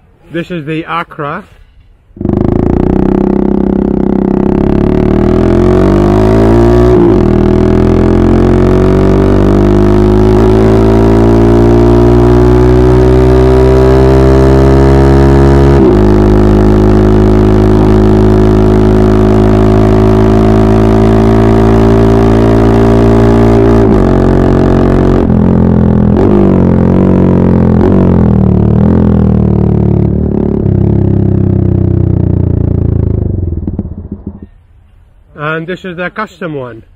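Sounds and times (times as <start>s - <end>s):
motorcycle engine revving: 2.2s - 34.6s.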